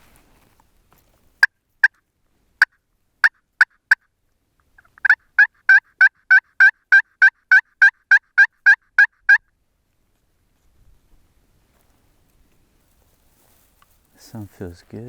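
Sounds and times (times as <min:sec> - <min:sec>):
turkey call notes: 0:01.4 - 0:02.0, 0:02.6 - 0:04.1, 0:04.7 - 0:09.4.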